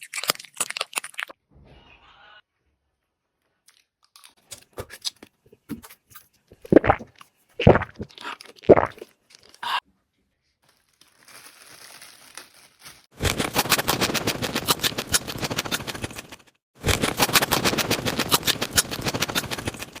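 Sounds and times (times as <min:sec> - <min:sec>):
rapid crunching crackles: 0:04.6 - 0:09.8, 0:11.7 - 0:20.0.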